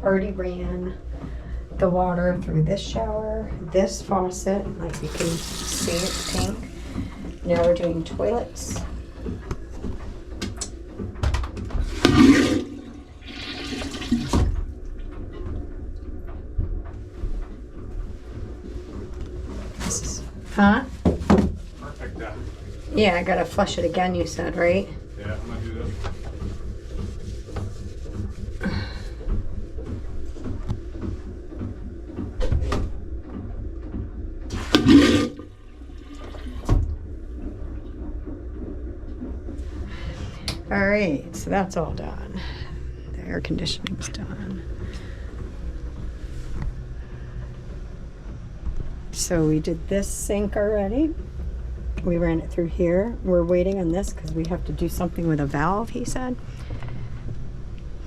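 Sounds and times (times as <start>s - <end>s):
low steady rumble: 0.0s - 58.0s
toilet flushing rush: 4.4s - 10.9s, 11.7s - 15.1s, 34.3s - 47.8s
toilet flush rush: 4.8s - 8.9s, 11.8s - 14.6s, 34.5s - 36.8s
water trickle: 5.0s - 7.3s.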